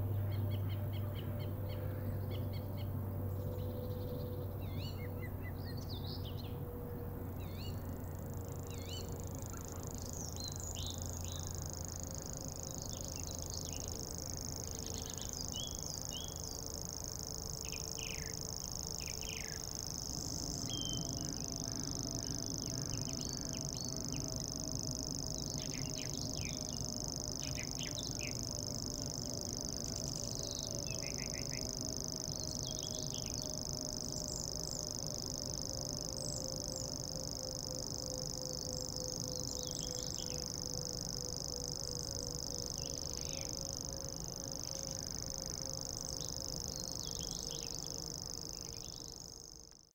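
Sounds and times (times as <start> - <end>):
low steady hum: 0.0 - 49.9
small birds chirping: 7.4 - 35.6, 45.7 - 49.6.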